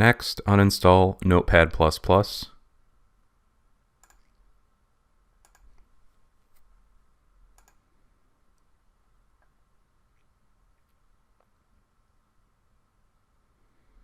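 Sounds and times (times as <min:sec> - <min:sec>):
computer mouse clicks: 0:04.0 - 0:04.4, 0:05.4 - 0:05.9, 0:07.5 - 0:07.9.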